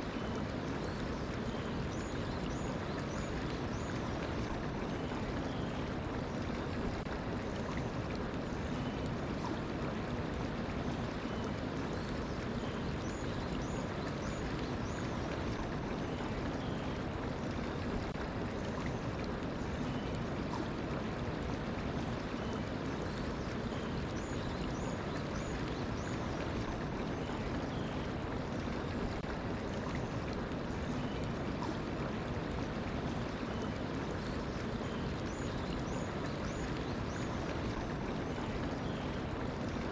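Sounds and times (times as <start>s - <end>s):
stream flowing: 0.0s - 39.9s.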